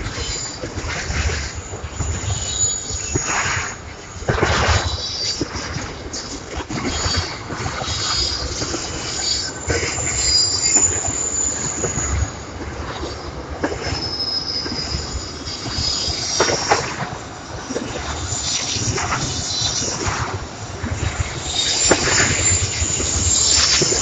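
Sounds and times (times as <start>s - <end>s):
train rumbling past: 0.0s - 24.0s
train wheels squealing: 0.0s - 24.0s
wheels clicking on rails: 0.0s - 24.0s.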